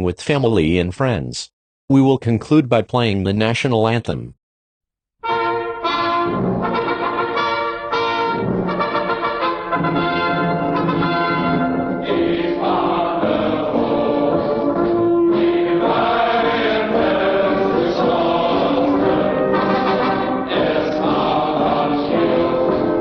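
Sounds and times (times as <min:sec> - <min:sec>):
orchestral accompaniment: 0:05.2 - 0:23.0
choir singing sustained notes: 0:11.8 - 0:23.0.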